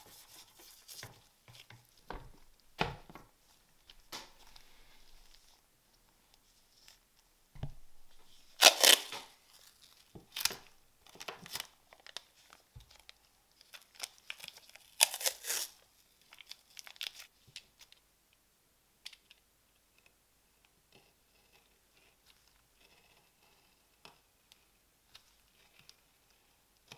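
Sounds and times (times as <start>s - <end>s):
tearing and crinkling: 7.6s - 17.3s.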